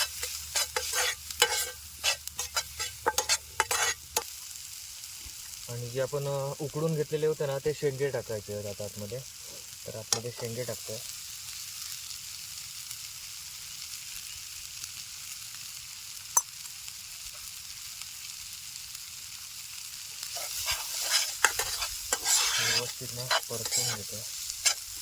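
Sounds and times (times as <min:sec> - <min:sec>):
spoon stirring and scraping pan: 0:00.0 - 0:04.3, 0:20.2 - 0:25.0
food sizzling in hot oil: 0:00.0 - 0:25.0.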